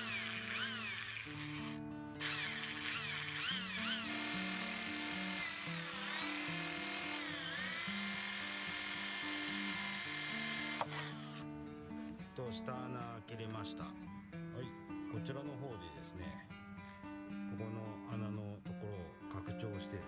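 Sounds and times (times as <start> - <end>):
electric drill boring wood: 0.0 - 11.4
background music: 0.0 - 20.0.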